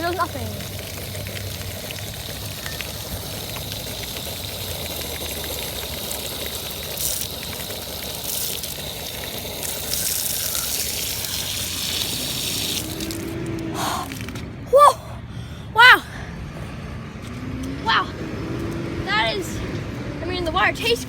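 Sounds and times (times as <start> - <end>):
drinking fountain spraying water: 0.0 - 14.4.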